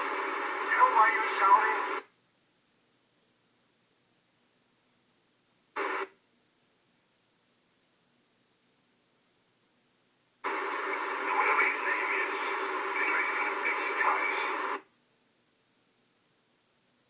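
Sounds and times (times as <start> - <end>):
hissy radio signal: 0.0 - 2.1, 5.8 - 6.1, 10.4 - 14.9.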